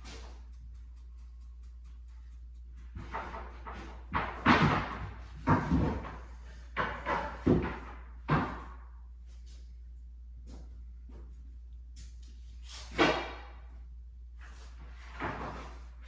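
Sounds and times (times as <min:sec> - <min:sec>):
wood knocks and thuds: 0:03.0 - 0:06.2.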